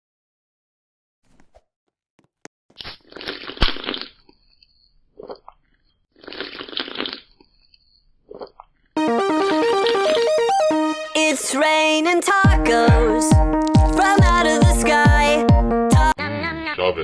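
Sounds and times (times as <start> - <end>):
crunchy food being chewed: 2.7 - 9.0.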